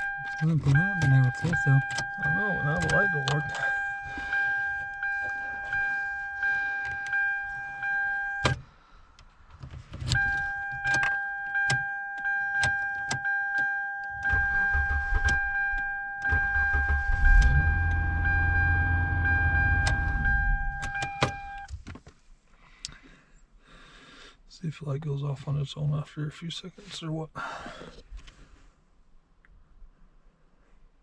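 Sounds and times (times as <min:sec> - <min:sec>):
electronic warning chime: 0:00.0 - 0:08.6, 0:10.2 - 0:21.7
key and switch clicks: 0:00.2 - 0:03.7, 0:10.0 - 0:14.2
low hum: 0:14.1 - 0:21.7.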